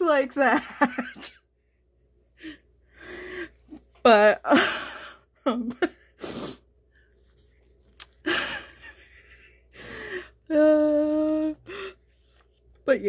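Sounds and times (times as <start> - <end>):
woman breathing and sighing: 2.4 - 3.8, 9.6 - 10.7, 11.6 - 12.4.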